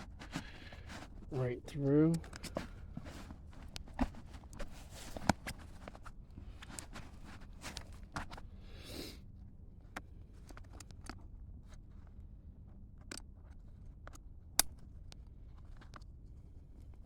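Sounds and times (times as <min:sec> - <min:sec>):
clicks of strap hardware: 0:01.8 - 0:05.6, 0:10.5 - 0:11.2, 0:13.0 - 0:15.2.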